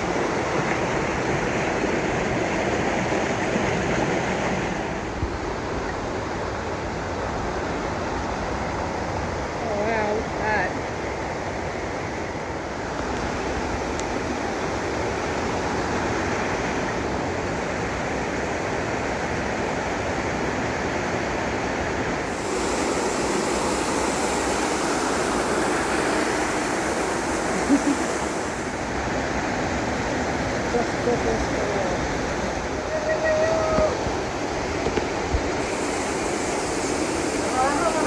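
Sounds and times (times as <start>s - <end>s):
water rushing through cave: 20.9s - 38.0s.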